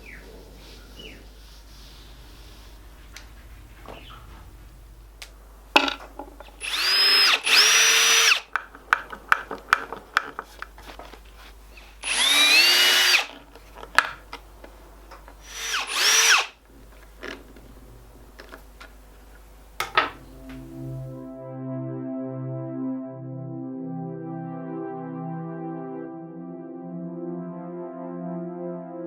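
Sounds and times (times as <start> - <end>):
power tool motor whining: 6.6 - 8.4, 12.0 - 13.4, 15.4 - 16.6.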